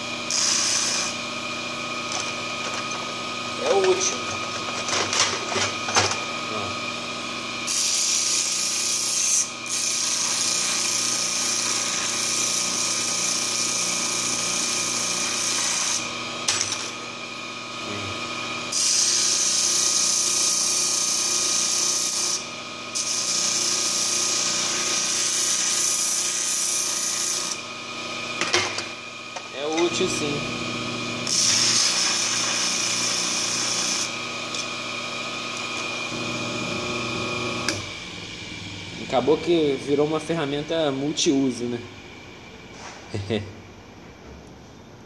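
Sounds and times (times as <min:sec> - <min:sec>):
sandpaper disc grinding: 0:00.0 - 0:01.2, 0:07.6 - 0:17.0, 0:18.7 - 0:27.7, 0:31.3 - 0:34.8
motor humming: 0:00.0 - 0:08.6, 0:13.6 - 0:21.1, 0:22.0 - 0:43.5.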